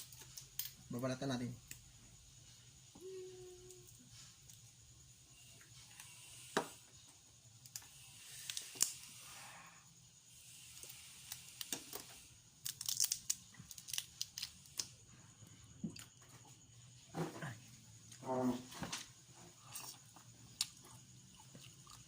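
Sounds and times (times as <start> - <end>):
seafood shells cracked by hand: 12.6 - 14.9.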